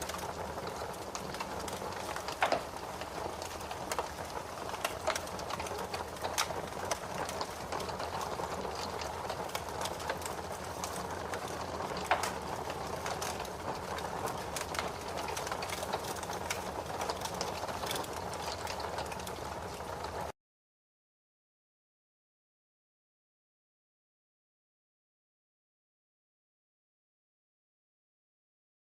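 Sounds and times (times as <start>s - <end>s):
wood fire crackling: 0.0s - 20.3s.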